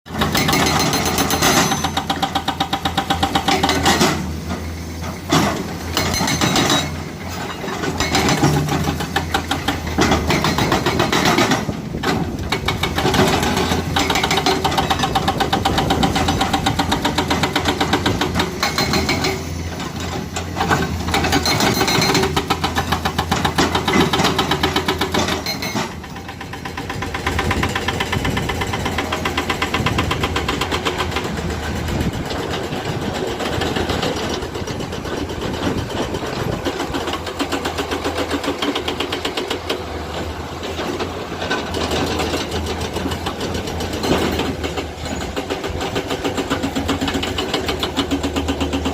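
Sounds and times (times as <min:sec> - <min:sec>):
excavator diesel engine clattering: 0:00.1 - 0:48.9.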